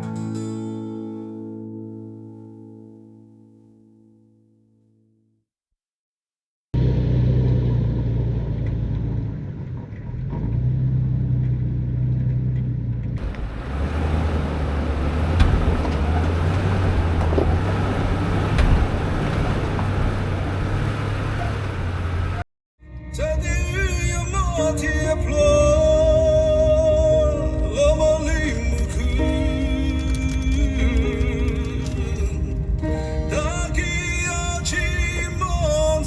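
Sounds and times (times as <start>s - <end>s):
road and wind rumble: 6.8s - 22.4s, 23.2s - 36.0s
vehicle engine hum: 6.8s - 36.0s.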